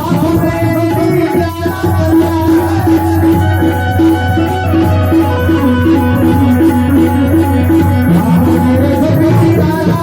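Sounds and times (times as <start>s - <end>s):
rhythmic percussion: 0.0s - 10.0s
folk melody in held notes: 2.0s - 10.0s.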